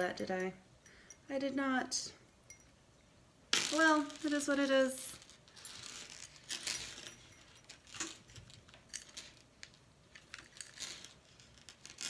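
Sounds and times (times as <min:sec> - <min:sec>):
metal chain clinking: 0:03.6 - 0:12.0
rustles: 0:03.6 - 0:12.0.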